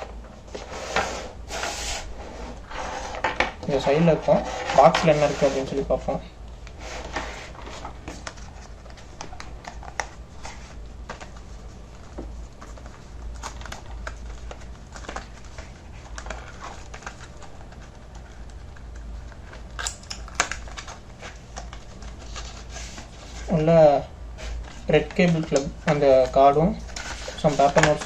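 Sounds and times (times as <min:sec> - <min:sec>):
steady low hum: 0:00.0 - 0:28.0
cardboard packaging handled: 0:24.4 - 0:28.0.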